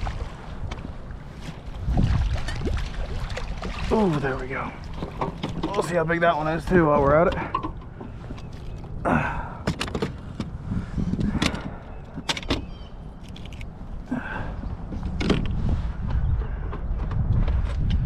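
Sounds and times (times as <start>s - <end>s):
wind rumble on microphone: 0.0s - 18.0s
handling clicks and knocks: 5.0s - 6.0s, 6.9s - 9.0s, 9.6s - 10.6s, 11.2s - 13.8s.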